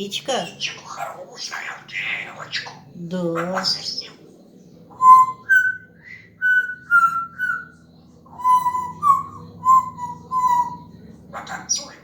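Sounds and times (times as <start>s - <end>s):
parrot whistling a tune: 4.9s - 12.0s.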